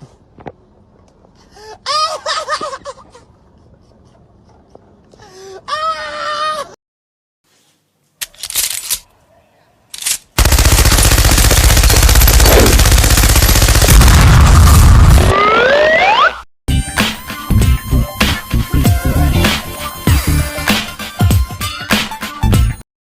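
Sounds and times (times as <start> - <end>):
loud rapid rattle: 10.4 - 14.1.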